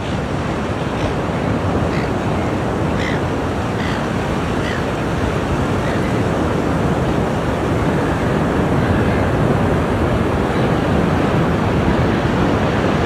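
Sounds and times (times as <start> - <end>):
ocean surf washing on shore: 0.0 - 13.0.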